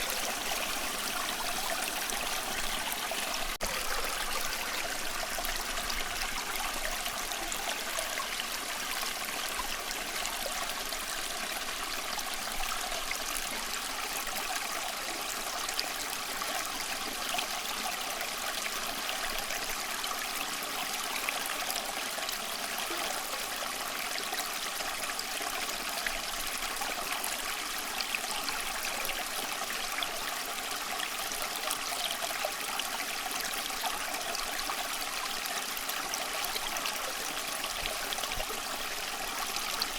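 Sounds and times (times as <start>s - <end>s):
stream trickling and splashing: 0.0s - 39.9s.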